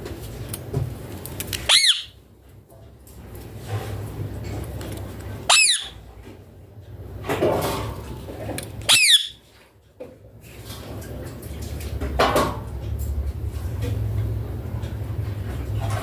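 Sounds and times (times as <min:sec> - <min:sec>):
parakeet shrill calls: 0:01.7 - 0:02.2, 0:05.5 - 0:06.0, 0:08.9 - 0:09.4.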